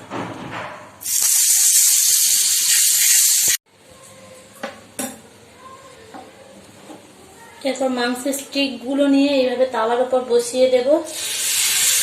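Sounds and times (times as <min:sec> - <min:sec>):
butter sizzling in hot oil: 0:01.0 - 0:03.6, 0:11.1 - 0:12.0.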